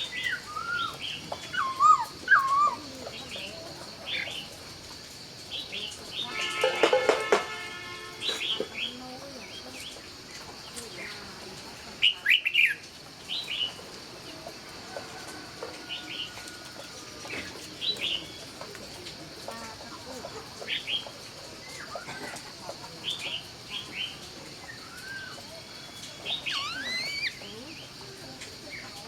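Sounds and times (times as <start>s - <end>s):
bird chirping sharply: 25.9s - 27.4s.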